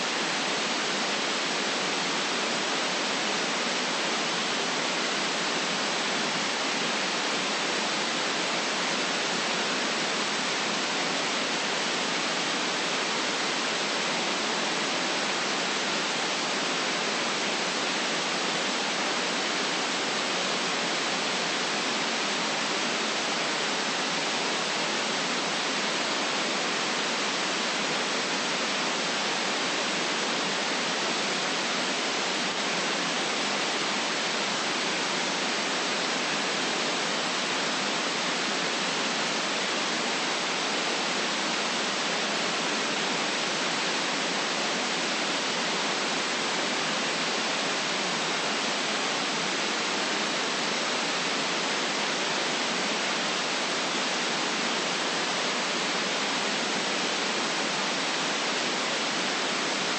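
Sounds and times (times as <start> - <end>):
white noise hiss: 0.0 - 59.9.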